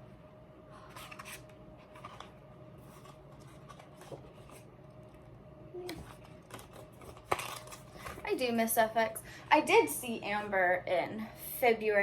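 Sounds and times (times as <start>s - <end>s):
paper pages rustling: 0.8s - 4.7s, 5.9s - 8.3s.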